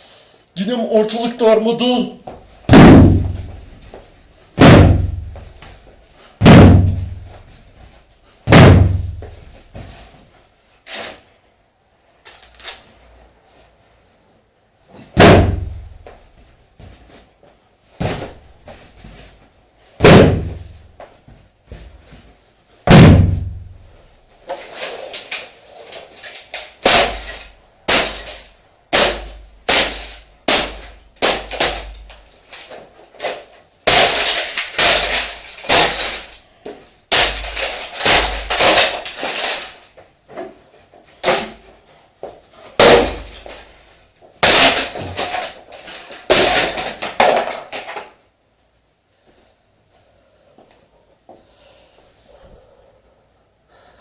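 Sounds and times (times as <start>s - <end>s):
shoe stomping heavily: 2.2s - 7.6s, 8.5s - 9.9s, 15.2s - 16.2s, 20.0s - 20.8s, 22.9s - 23.8s
plastic and wood cracking: 24.5s - 36.4s, 37.1s - 40.0s, 44.4s - 48.2s.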